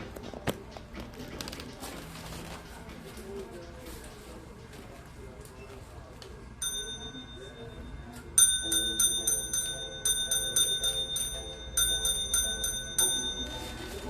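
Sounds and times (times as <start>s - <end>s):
small bell dinging: 6.6s - 13.9s.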